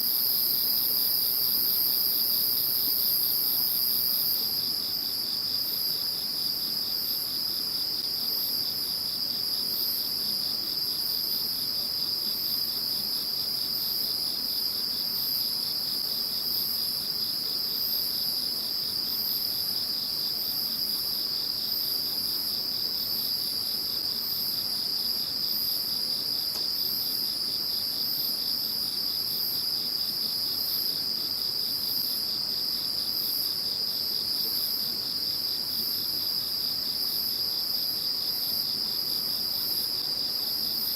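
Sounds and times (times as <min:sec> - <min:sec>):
high insect chirp: 0:00.0 - 0:40.9.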